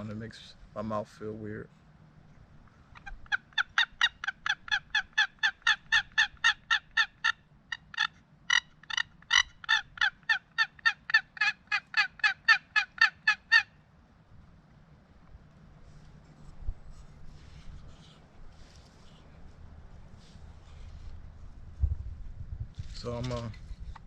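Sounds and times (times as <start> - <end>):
box turkey call yelps: 2.9 - 13.8.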